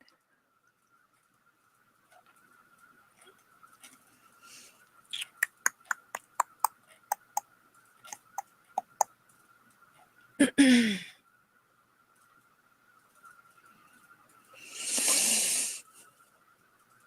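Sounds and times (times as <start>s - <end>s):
sharp clicks: 5.1s - 7.4s
breath noise: 14.5s - 16.0s.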